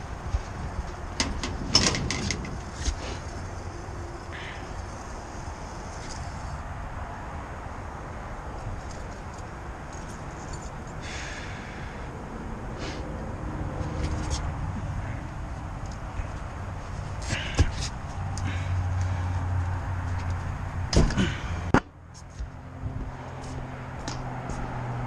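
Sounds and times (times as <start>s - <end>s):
steady background noise: 0.0s - 25.0s
sharp clicks and knocks: 0.3s - 3.4s.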